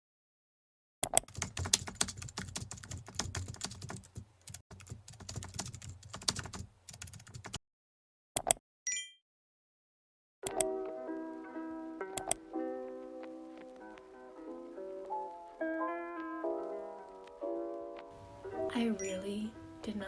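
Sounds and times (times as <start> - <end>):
keyboard keystroke clicks: 10.4 - 11.0, 12.2 - 12.4.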